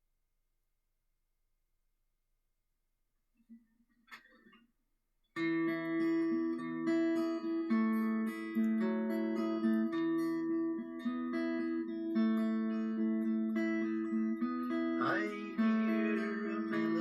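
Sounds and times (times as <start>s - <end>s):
acoustic guitar strumming chords: 5.4s - 17.0s.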